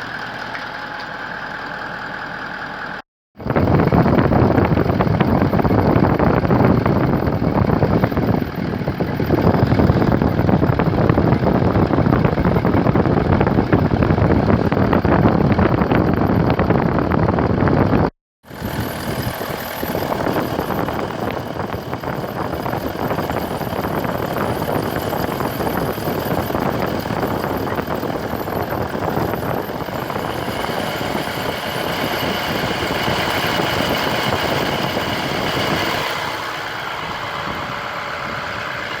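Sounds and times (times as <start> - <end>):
car engine idling: 18.5 - 39.0.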